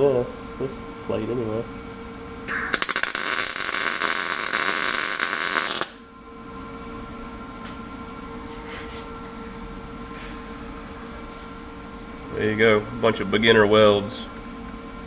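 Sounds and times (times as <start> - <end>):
steady low hum: 0.0 - 15.0
welding arc crackling: 2.5 - 6.0.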